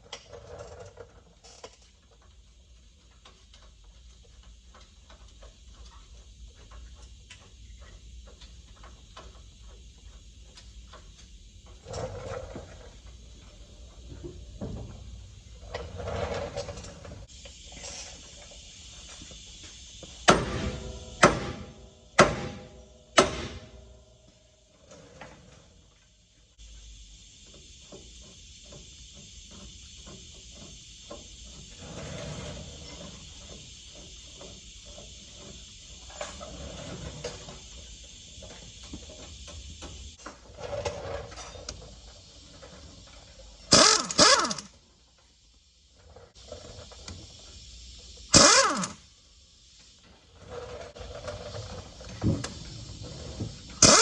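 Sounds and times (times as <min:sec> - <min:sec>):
steady hiss: 0:00.0 - 0:54.0
pneumatic air tool bursts: 0:20.1 - 0:23.8, 0:43.7 - 0:44.8, 0:48.3 - 0:49.1, 0:53.7 - 0:54.0.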